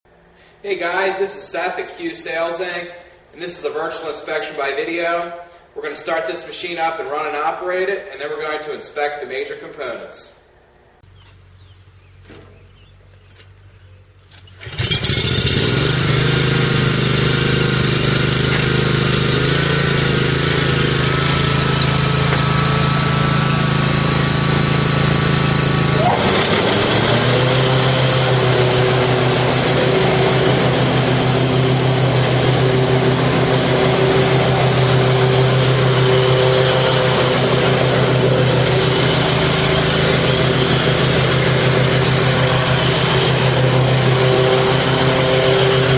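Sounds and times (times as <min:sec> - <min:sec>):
lawn mower engine running: 0:11.0 - 0:45.9.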